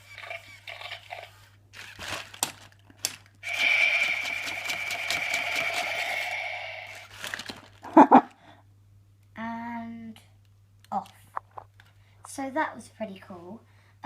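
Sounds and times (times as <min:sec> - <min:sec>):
toy dinosaur roar through speaker: 0:03.4 - 0:07.1.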